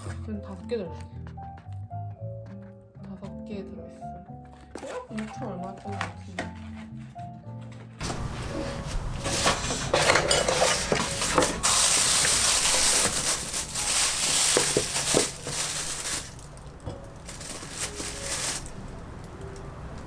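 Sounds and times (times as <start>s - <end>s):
rustling: 6.6s - 20.0s
kitchen clinks and knocks: 8.0s - 19.2s.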